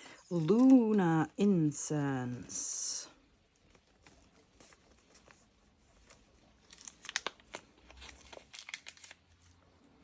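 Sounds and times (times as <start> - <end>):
packaging crinkling and crackling: 3.2 - 9.6.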